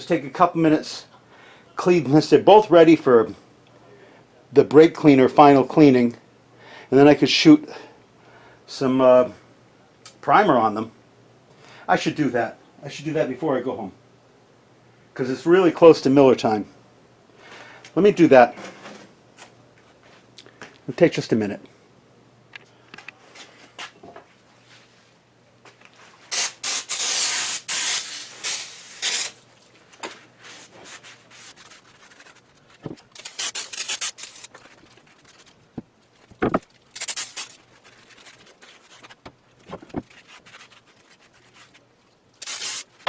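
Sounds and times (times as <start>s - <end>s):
aerosol spray hissing: 26.3s - 29.4s, 33.2s - 34.5s, 37.0s - 37.6s, 42.4s - 42.9s
wiping sounds: 26.3s - 43.0s.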